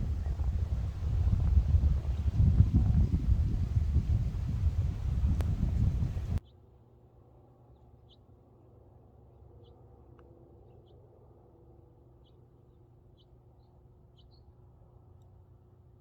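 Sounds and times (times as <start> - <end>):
faint birds chirping: 0.0 - 6.6
low steady outdoor rumble: 0.0 - 16.0.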